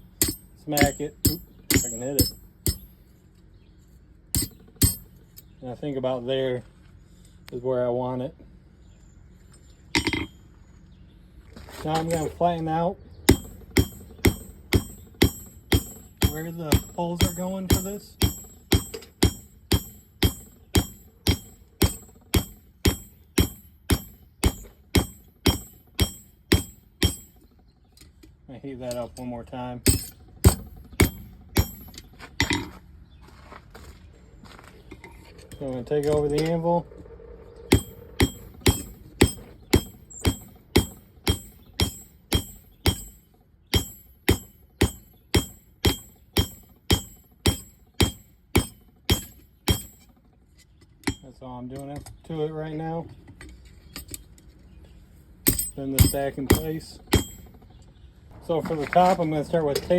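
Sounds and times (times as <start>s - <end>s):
hammer striking steel on anvil: 0.0s - 3.0s, 4.4s - 5.2s, 10.0s - 10.3s, 13.3s - 27.4s, 28.9s - 32.7s, 37.7s - 50.1s, 55.4s - 57.6s.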